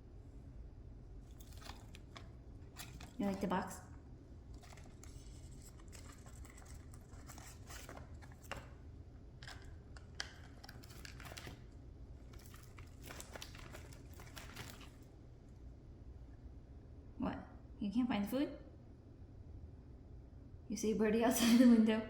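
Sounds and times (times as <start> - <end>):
parrot tearing paper and cardboard: 1.2 - 15.1.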